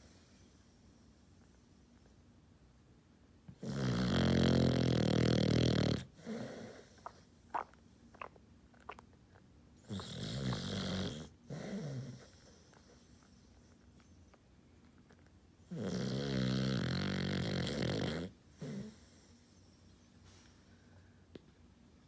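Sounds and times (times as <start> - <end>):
puppy snoring: 3.5 - 9.0, 9.8 - 13.8, 15.1 - 19.6.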